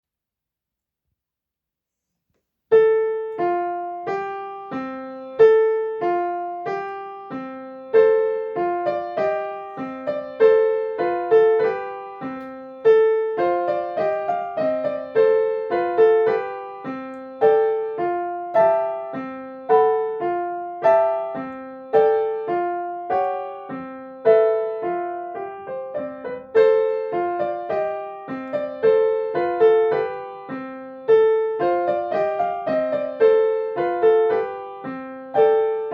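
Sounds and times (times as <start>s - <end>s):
piano bell-like figure: 2.8s - 35.9s.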